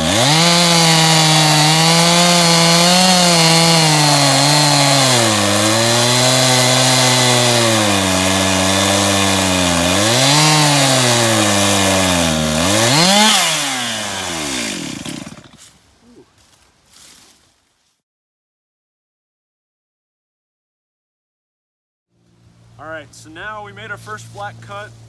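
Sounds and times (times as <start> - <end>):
chainsaw ripping through log: 0.0 - 15.8.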